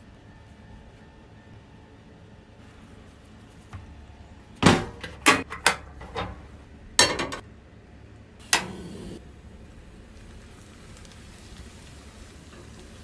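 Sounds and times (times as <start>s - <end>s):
utensils clinking on cookware: 4.6s - 7.4s.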